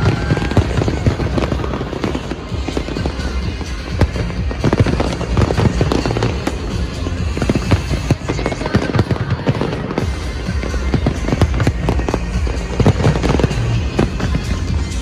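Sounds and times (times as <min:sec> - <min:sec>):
fireworks bangs and crackles: 0:00.0 - 0:15.0
music playing: 0:00.0 - 0:15.0.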